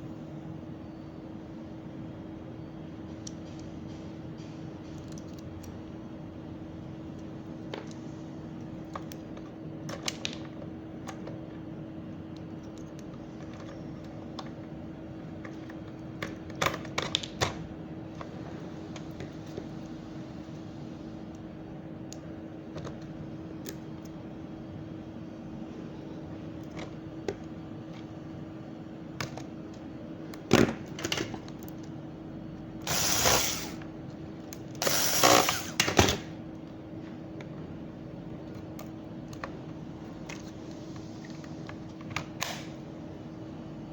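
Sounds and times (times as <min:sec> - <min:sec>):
steady hum: 0:00.0 - 0:09.9, 0:17.7 - 0:43.9
harsh noisy bursts: 0:32.9 - 0:33.8.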